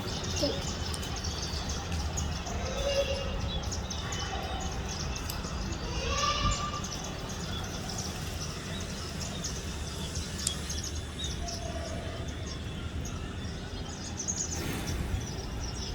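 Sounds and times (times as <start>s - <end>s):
small birds chirping: 0.0s - 15.9s.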